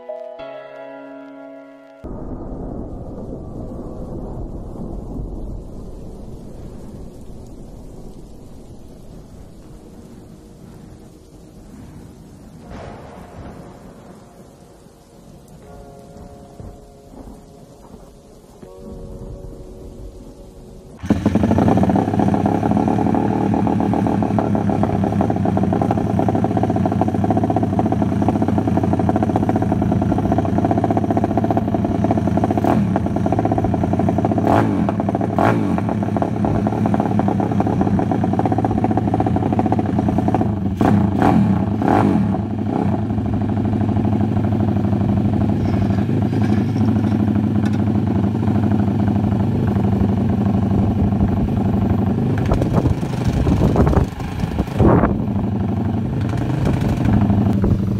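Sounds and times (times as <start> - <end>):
motorcycle engine running: 21.0 - 57.9
sharp exhaust cracks: 21.0 - 57.9.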